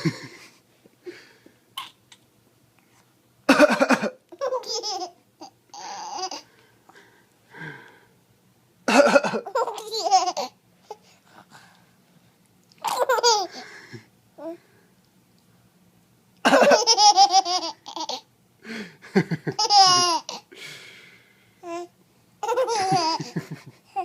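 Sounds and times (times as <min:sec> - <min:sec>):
man coughing: 0:03.5 - 0:04.2, 0:08.9 - 0:09.5, 0:16.4 - 0:16.8
baby laughing: 0:03.5 - 0:06.5, 0:08.9 - 0:10.6, 0:12.8 - 0:13.6, 0:16.5 - 0:18.3, 0:19.5 - 0:20.4, 0:22.4 - 0:24.0.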